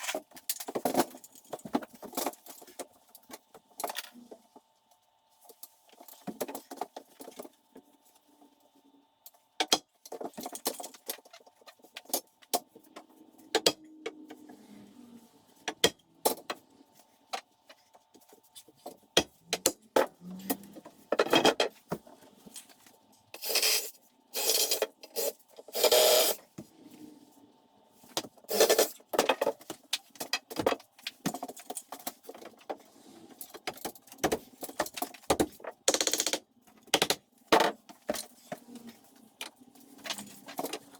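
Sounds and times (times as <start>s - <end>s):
tools clicking and knocking: 9.6s - 14.4s.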